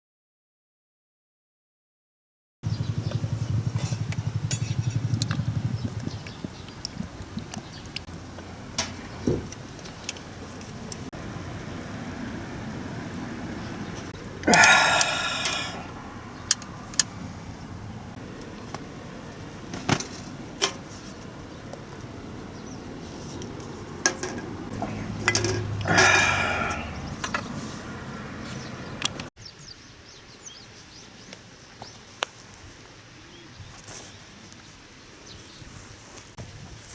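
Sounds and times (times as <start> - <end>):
ringing metallic clatter: 3.8 - 5.1, 25.2 - 25.8
metal cookware clinking: 4.5 - 5.1, 24.1 - 25.8.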